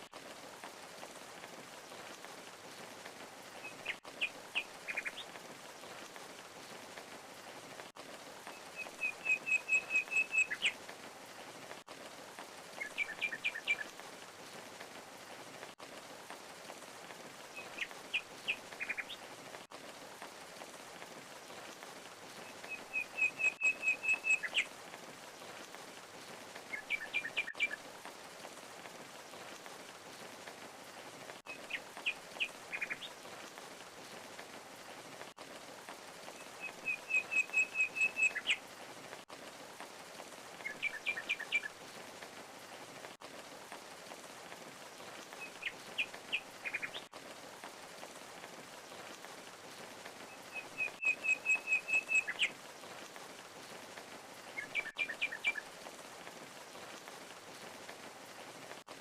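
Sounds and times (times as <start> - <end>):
small birds chirping: 3.4 - 6.0, 8.5 - 10.8, 12.6 - 14.2, 17.4 - 19.3, 21.4 - 24.7, 25.3 - 27.8, 31.4 - 33.6, 36.4 - 38.6, 40.6 - 42.7, 44.8 - 47.1, 50.3 - 53.0, 54.4 - 55.9.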